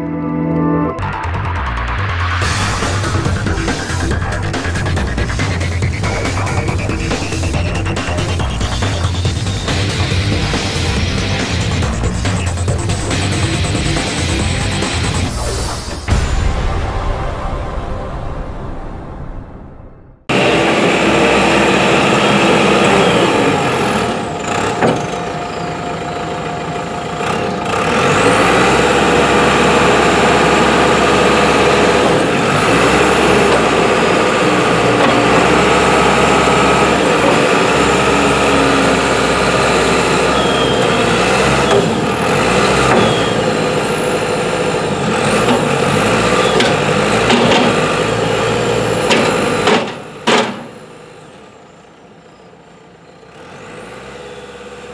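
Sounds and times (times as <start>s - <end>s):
high whine: 0.0s - 24.4s
diesel engine running: 0.0s - 54.9s.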